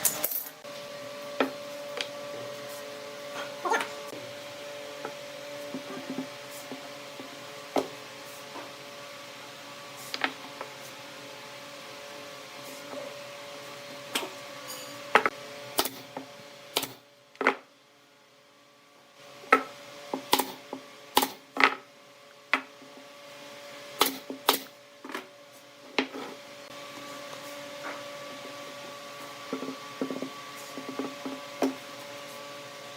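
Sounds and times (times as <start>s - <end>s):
machine hum: 0.0s - 17.0s.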